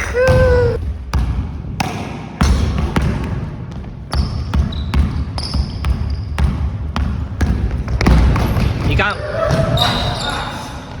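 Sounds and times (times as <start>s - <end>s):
basketball bouncing on gym floor: 0.1s - 9.8s
sneaker squeaks: 4.1s - 6.5s, 9.4s - 10.7s.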